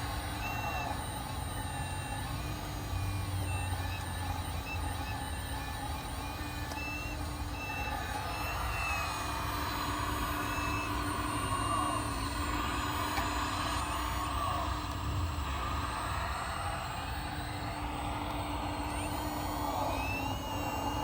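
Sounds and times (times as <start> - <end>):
hydraulic pump whine: 0.0 - 21.0.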